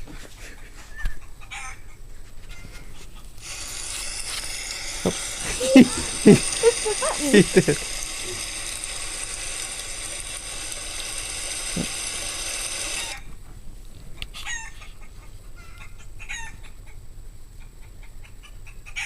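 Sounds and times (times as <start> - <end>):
dense chicken sound: 0.0 - 3.8, 14.3 - 17.0, 17.6 - 19.0
chicken clucks: 0.6 - 3.4, 14.4 - 17.0, 17.6 - 19.0.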